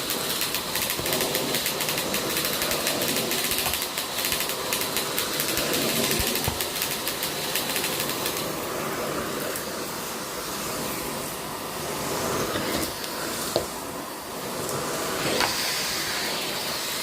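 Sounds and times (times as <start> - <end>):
rapid clicking and rattling: 0.0 - 8.6
vacuum cleaner running: 0.0 - 17.0.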